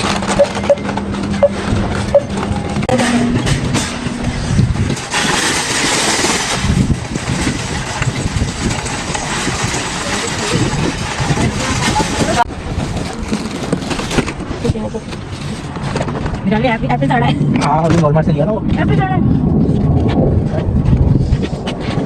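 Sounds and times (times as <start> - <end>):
loud rushing noise: 0.0 - 10.1
vehicle engine rumbling: 0.0 - 22.0.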